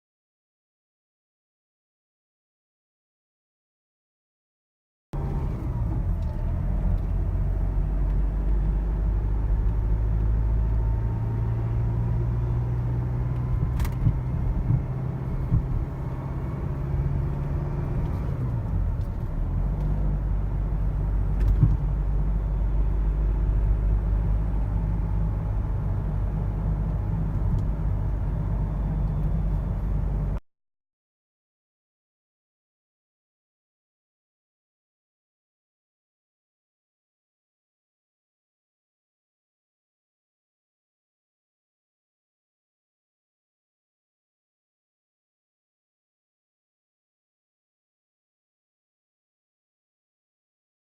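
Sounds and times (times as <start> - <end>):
car road rumble: 5.2 - 30.4.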